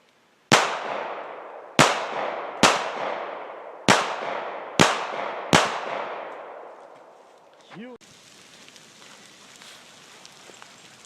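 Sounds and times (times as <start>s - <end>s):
pistol shots: 0.5s - 7.1s.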